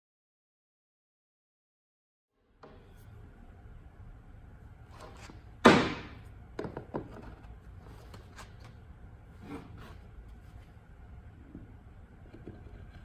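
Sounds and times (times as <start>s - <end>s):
low steady hum: 2.4s - 13.0s.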